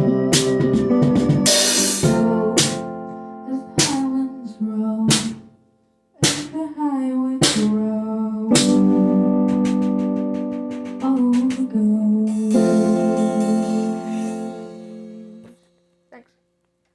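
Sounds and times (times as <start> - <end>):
rock band playing chords: 0.0 - 3.0, 8.5 - 11.7, 12.3 - 15.4
sharp drum hits: 1.5 - 2.9, 3.8 - 4.0, 5.1 - 5.4, 6.2 - 6.6, 7.4 - 7.8, 8.5 - 11.8.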